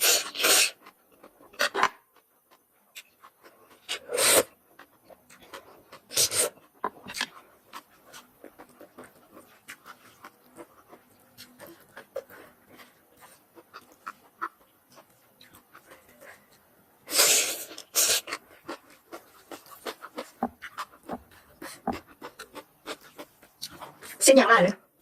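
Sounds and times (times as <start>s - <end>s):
person slurping noodles: 0.0s - 0.8s, 3.9s - 4.6s, 6.1s - 6.6s, 17.1s - 18.4s
wet chewing and lip-smacking: 0.1s - 17.0s, 17.6s - 24.2s.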